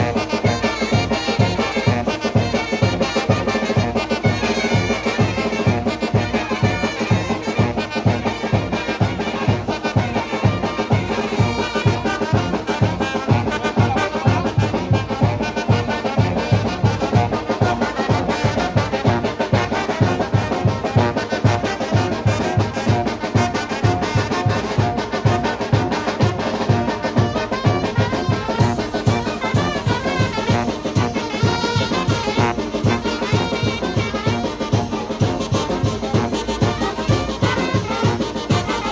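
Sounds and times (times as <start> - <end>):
trumpets and trombones: 0.0 - 38.9
steady low drum beat: 23.7 - 38.9.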